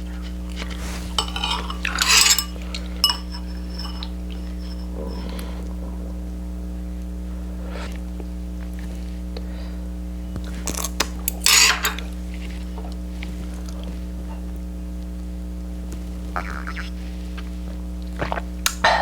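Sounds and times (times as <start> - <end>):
steady low hum: 0.0 - 19.0
utensils clicking on dishes: 0.8 - 5.0, 10.7 - 12.0.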